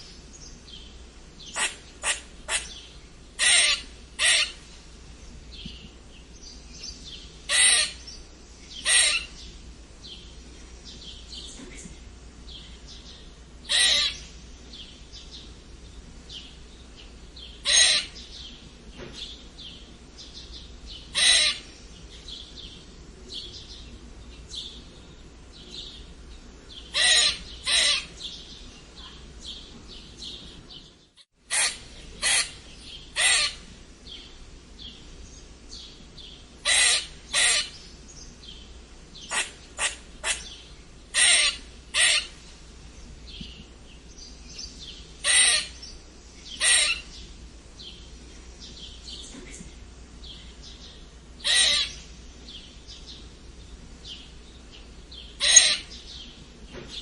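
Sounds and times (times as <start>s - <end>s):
squirrel harsh squeaks: 3.4s - 4.6s, 7.5s - 8.0s, 8.8s - 9.3s, 13.7s - 14.2s, 21.2s - 21.6s, 26.9s - 28.1s, 31.5s - 32.6s, 33.2s - 33.6s, 36.7s - 37.8s, 41.1s - 42.4s, 45.2s - 45.8s, 46.6s - 47.1s, 51.4s - 52.0s, 55.4s - 55.9s.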